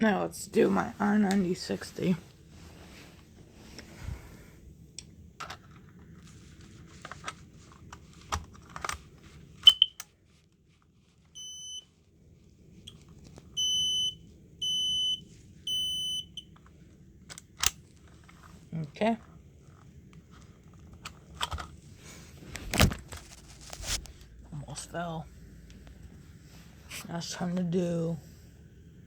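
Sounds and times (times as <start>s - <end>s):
clicks and knocks of handling: 5.4s - 10.1s, 19.2s - 21.8s
smoke alarm beeps: 9.6s - 10.0s, 11.4s - 11.9s, 13.6s - 16.5s
smoke alarm chirp: 9.7s - 10.0s, 11.4s - 11.9s, 13.6s - 16.5s.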